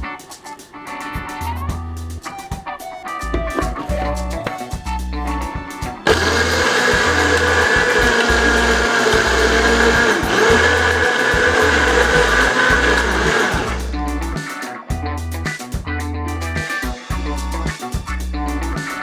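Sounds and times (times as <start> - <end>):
electric blender running: 6.0 - 13.9.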